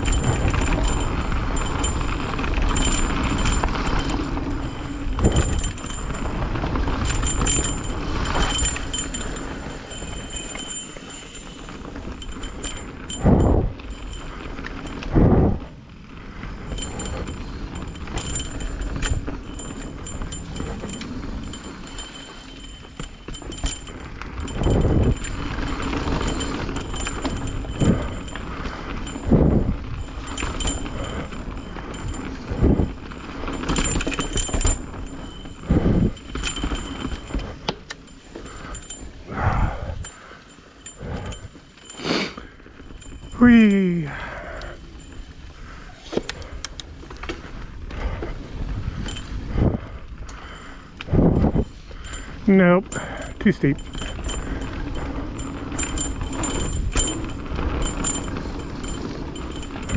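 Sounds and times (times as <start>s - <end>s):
bike thumping over bumps: 0.0s - 43.4s, 53.2s - 59.9s
bike tyre and drivetrain noise: 0.0s - 59.9s
rattling clicks: 16.6s - 43.7s, 44.4s - 49.4s.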